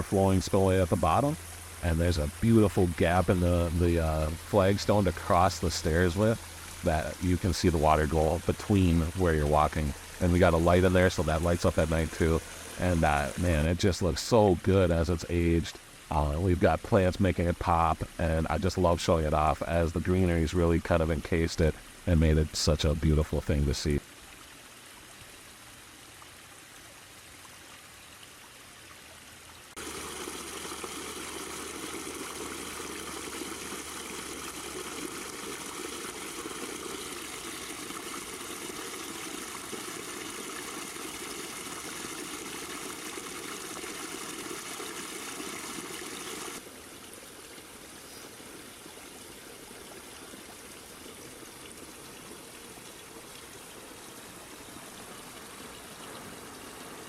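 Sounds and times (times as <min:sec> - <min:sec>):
water trickling over rocks: 0:00.0 - 0:57.0.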